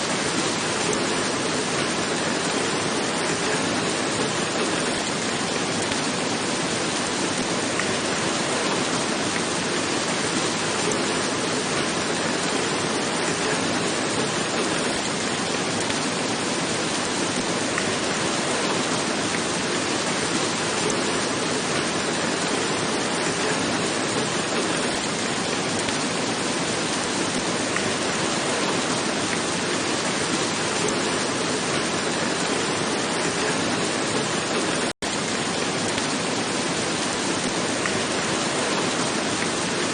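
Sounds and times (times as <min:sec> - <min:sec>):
rain falling on a roof: 0:00.0 - 0:39.9.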